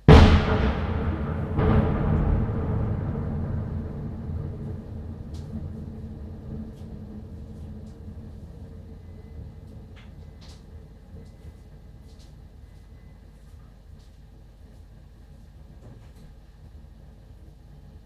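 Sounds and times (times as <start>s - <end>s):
explosion rumble: 0.0s - 11.5s.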